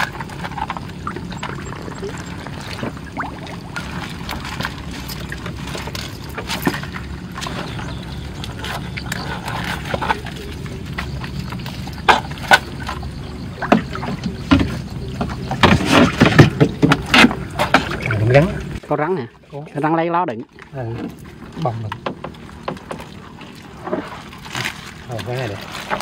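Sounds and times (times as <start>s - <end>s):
steady low hum: 0.0s - 19.5s
water sloshing and splashing: 0.0s - 26.0s
fish trap knocking and clattering: 11.0s - 18.5s, 21.0s - 23.3s.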